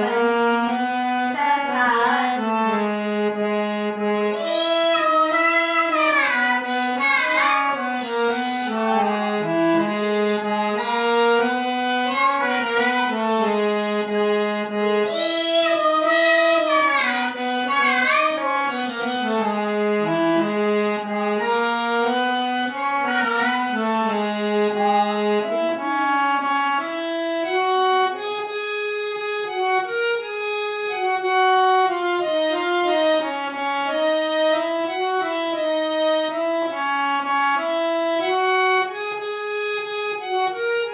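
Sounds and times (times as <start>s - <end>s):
reedy melody instrument: 0.0s - 40.9s.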